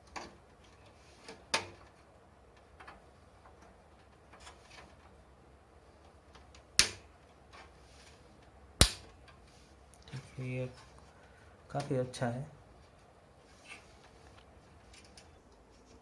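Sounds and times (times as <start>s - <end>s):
sharp clicks and knocks: 6.0s - 7.7s.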